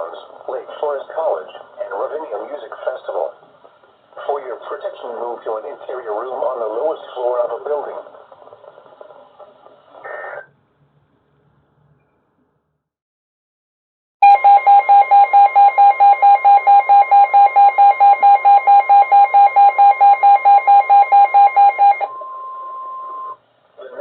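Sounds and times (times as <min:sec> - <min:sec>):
rapid pulsing alarm beeps: 0:14.2 - 0:23.4
steady warning alarm tone: 0:14.2 - 0:23.4.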